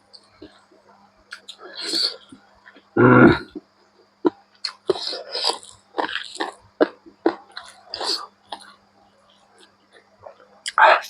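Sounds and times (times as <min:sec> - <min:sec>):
throat sound: 0:03.0 - 0:03.6
wet chewing and mouth clicks: 0:04.2 - 0:08.8.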